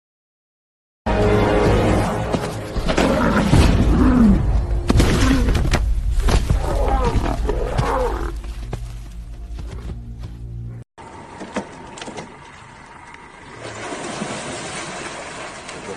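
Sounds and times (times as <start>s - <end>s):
animals growling and roaring: 1.9s - 5.8s, 6.4s - 8.6s.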